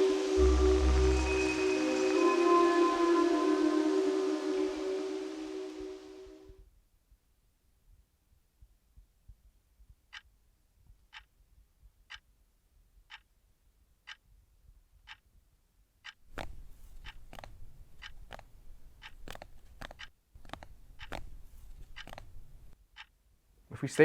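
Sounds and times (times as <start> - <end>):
low rumble: 0.0 - 1.9
clock ticking: 10.1 - 10.3, 11.1 - 11.3, 13.1 - 13.3, 16.0 - 23.2
irregular clicks and knocks: 16.1 - 23.2.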